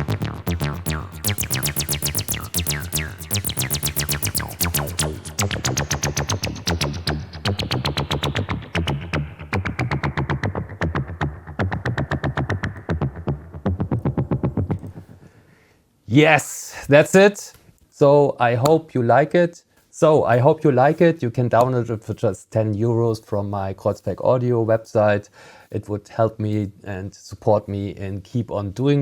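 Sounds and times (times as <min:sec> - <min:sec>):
distorted acid synth line: 0:00.0 - 0:14.8.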